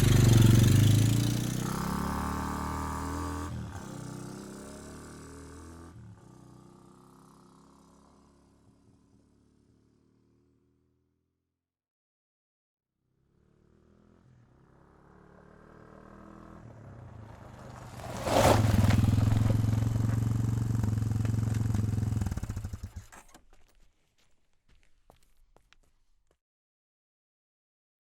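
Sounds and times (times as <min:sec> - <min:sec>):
quad bike engine passing: 0:00.0 - 0:10.7, 0:13.2 - 0:23.4.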